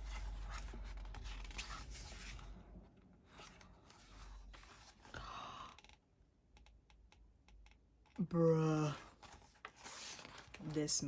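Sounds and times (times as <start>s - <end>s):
paper pages rustling: 0.0s - 2.5s, 9.2s - 11.0s.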